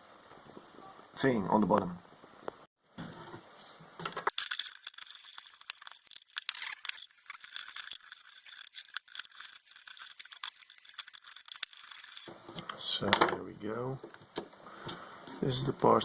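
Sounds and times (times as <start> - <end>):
metal parts clicking and rattling: 4.3 - 12.3.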